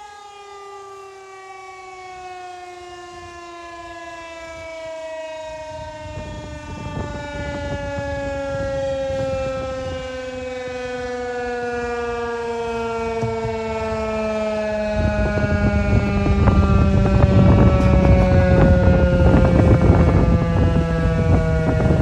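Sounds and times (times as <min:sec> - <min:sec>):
tornado siren winding down: 0:00.0 - 0:22.0
low rumbling noise: 0:12.6 - 0:22.0.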